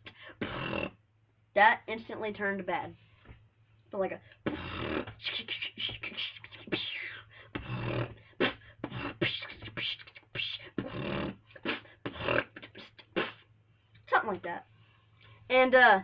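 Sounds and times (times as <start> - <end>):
beatboxing: 0.4 - 0.9, 4.4 - 13.4.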